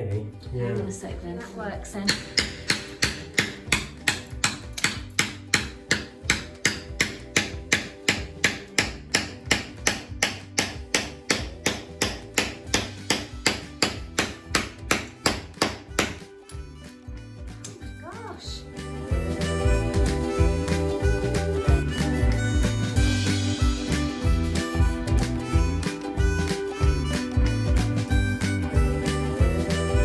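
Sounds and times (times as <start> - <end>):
hammer striking a chisel: 2.1 - 16.6.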